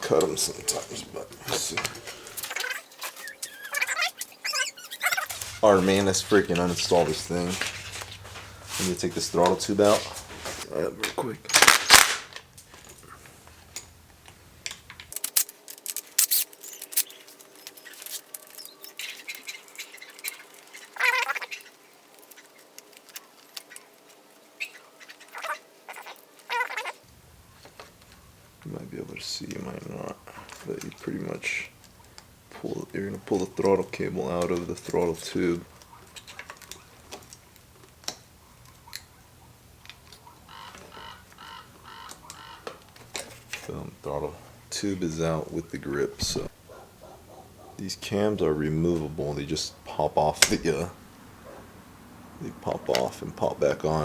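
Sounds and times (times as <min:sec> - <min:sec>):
rubber grip squeaking: 0:02.4 - 0:08.3, 0:15.1 - 0:27.0
plastic and metal parts clicking: 0:14.6 - 0:27.0.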